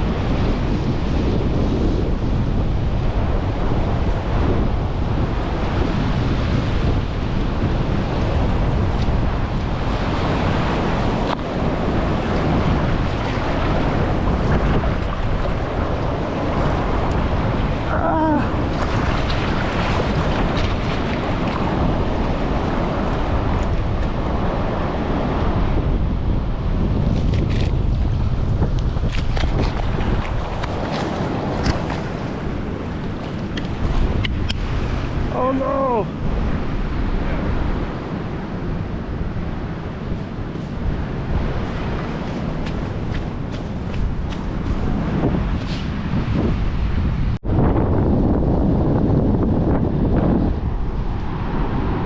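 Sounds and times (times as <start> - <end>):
ocean surf breaking: 0.0 - 47.4, 48.7 - 52.0
wind buffeting microphone: 0.0 - 52.0.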